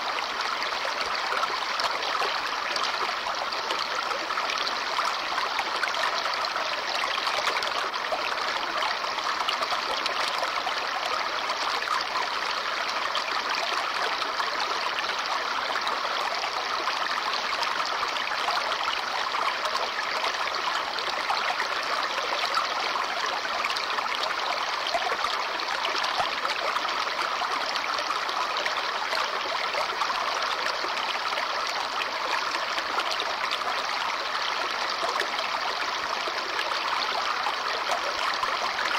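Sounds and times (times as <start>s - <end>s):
babbling brook: 0.0s - 38.9s.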